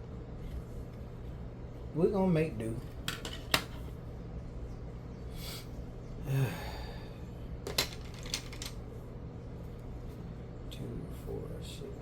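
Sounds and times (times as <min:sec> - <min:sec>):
ceiling fan humming: 0:00.0 - 0:12.0
man exhaling: 0:05.4 - 0:07.2
plastic pieces clicking: 0:07.7 - 0:08.8.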